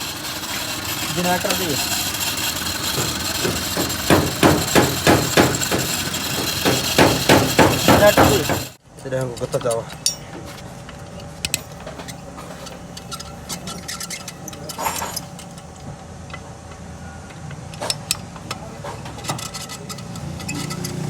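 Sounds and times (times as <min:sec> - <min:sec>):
car engine running: 0:00.0 - 0:08.8
alternator hum and whirr: 0:00.0 - 0:21.0.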